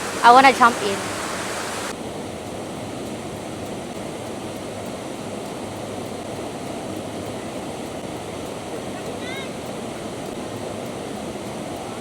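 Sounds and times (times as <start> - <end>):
waterfall and stream rushing: 0.0 - 2.1.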